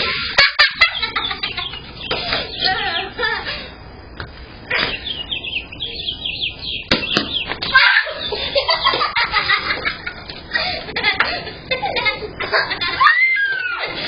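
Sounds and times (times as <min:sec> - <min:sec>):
sharp knocks: 0:06.9 - 0:07.6
children squealing and shrieking: 0:07.6 - 0:08.4, 0:12.8 - 0:14.0.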